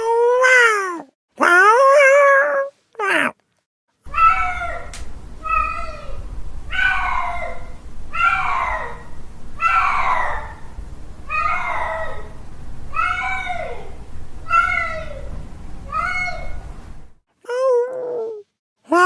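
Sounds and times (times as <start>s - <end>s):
cat yowling: 4.1s - 16.8s
low steady hum: 4.1s - 17.2s.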